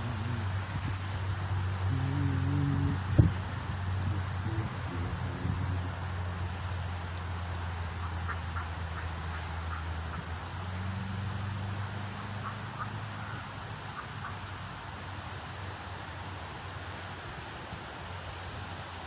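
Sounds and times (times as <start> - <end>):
low motor hum: 0.0 - 13.8
constant hiss: 0.0 - 19.0.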